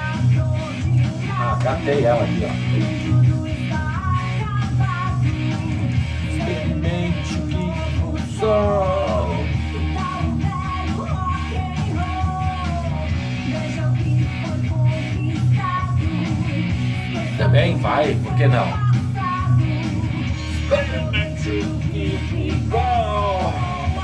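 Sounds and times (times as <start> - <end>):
rock song with electric guitars: 0.0 - 24.0
man singing roughly: 1.3 - 3.2, 6.2 - 9.6, 17.3 - 18.8, 20.5 - 24.0.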